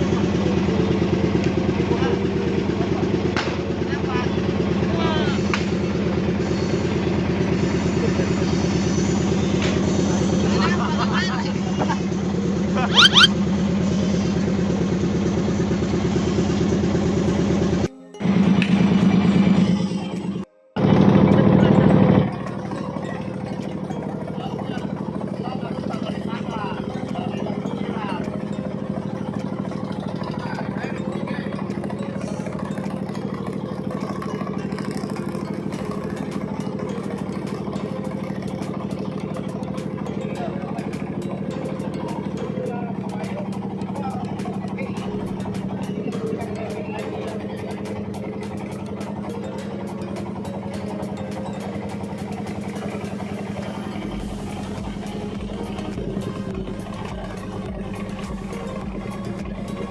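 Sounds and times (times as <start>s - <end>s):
engine idling: 0.0s - 59.9s
quick rising chirps: 12.8s - 13.4s.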